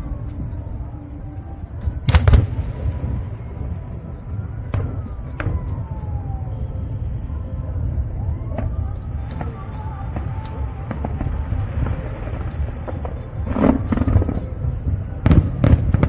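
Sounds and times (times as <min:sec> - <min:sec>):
steady low rumble: 0:00.0 - 0:16.0
whistling fireworks falling in pitch: 0:00.0 - 0:16.0
fireworks bangs and pops: 0:01.8 - 0:06.3, 0:08.5 - 0:16.0.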